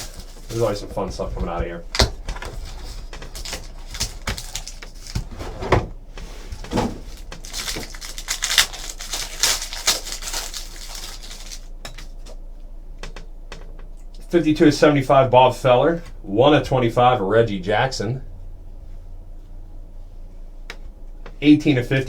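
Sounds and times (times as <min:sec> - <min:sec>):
packaging crinkling and tearing: 0:00.0 - 0:00.9, 0:01.9 - 0:05.3, 0:06.8 - 0:12.1
cardboard rustling: 0:00.0 - 0:11.7.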